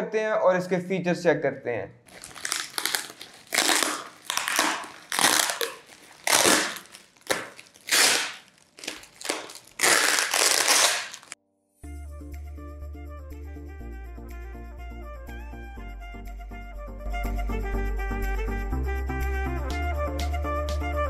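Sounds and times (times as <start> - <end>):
packing material crunching and rustling: 2.1 - 11.4
background music: 11.7 - 21.0.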